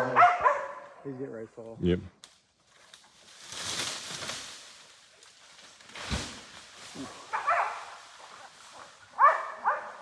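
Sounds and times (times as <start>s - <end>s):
dog barking: 0.0s - 1.0s, 7.2s - 8.0s, 9.2s - 10.0s
rustling in brush and branches: 2.2s - 10.0s.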